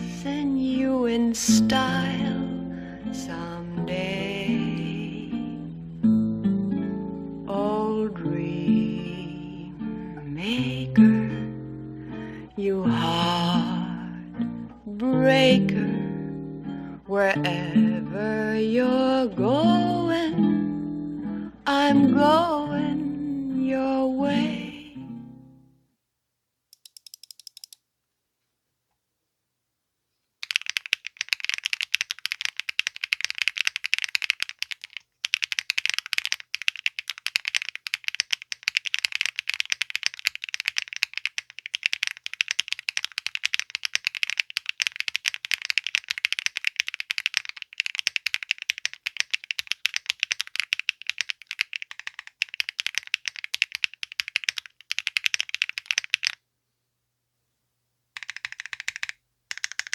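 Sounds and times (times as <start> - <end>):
mechanical keyboard typing: 26.8 - 27.8, 30.4 - 56.4, 58.2 - 59.9.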